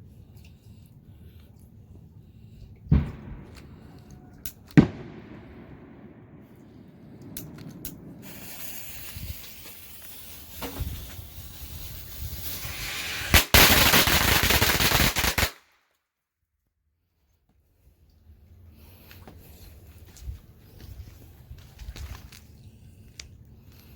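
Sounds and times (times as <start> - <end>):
firecrackers cracking rapidly: 3.0 - 15.7
firecracker fuse hissing: 7.3 - 15.6.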